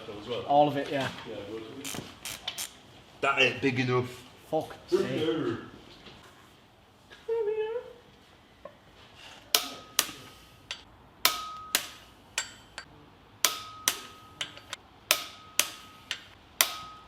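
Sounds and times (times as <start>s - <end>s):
metal tool striking metal: 9.6s - 17.0s.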